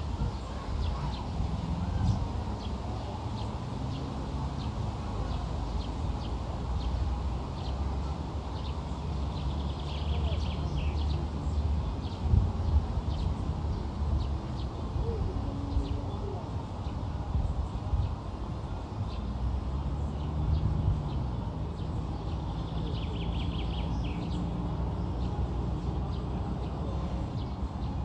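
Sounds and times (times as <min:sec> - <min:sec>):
birds chirping: 0:19.0 - 0:28.0.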